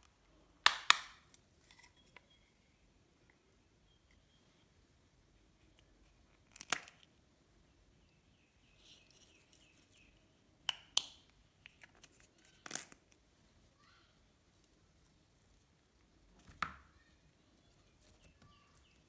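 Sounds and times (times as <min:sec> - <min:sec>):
soft crinkling: 0:11.6 - 0:19.0.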